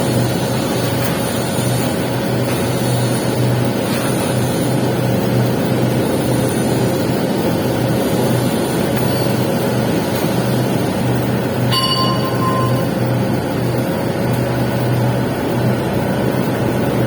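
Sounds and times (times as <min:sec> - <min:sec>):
arc welding crackling hiss: 0:00.0 - 0:13.0.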